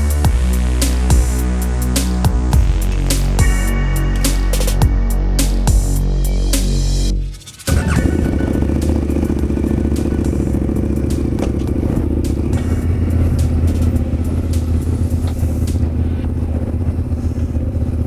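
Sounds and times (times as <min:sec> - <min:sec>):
motorcycle engine idling: 0:07.7 - 0:18.0.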